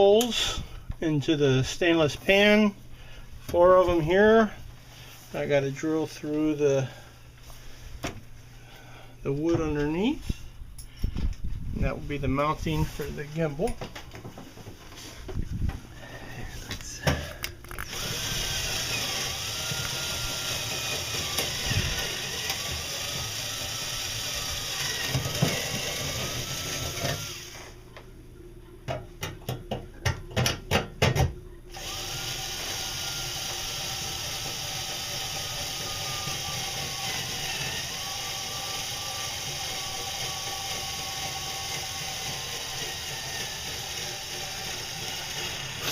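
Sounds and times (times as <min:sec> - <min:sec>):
electric drill boring through wood: 0:17.8 - 0:27.7, 0:31.7 - 0:45.9.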